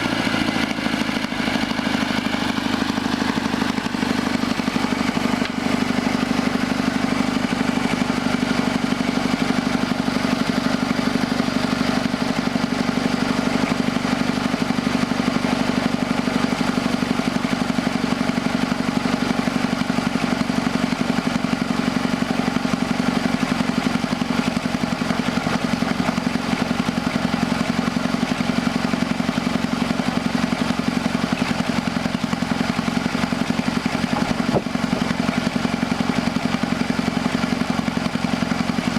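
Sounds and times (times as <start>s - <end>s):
sawmill engine running: 0.0s - 38.9s.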